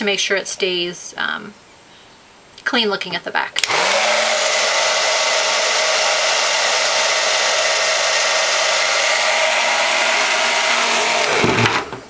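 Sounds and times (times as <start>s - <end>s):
hair dryer blowing air: 3.6s - 12.0s.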